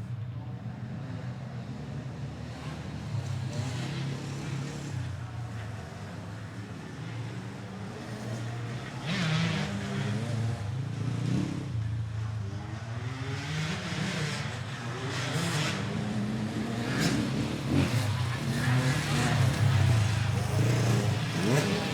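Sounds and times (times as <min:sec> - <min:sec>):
motorcycle engine revving: 0:12.9 - 0:21.9.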